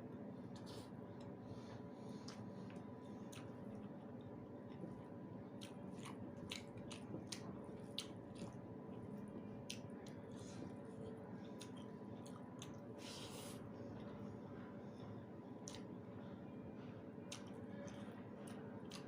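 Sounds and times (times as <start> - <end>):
person chewing food: 0.5 - 13.6, 15.6 - 15.9, 17.3 - 19.0.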